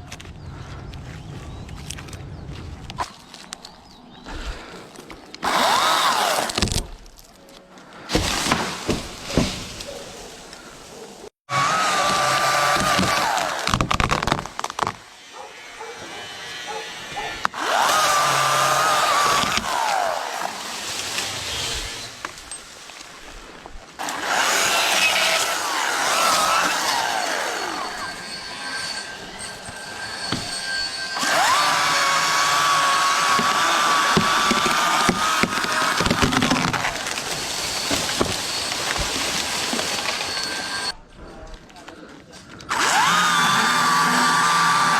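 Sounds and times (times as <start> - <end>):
chainsaw cutting tree trunk: 5.4 - 7.0, 8.1 - 9.9, 11.5 - 22.6, 24.0 - 41.0, 42.7 - 44.9.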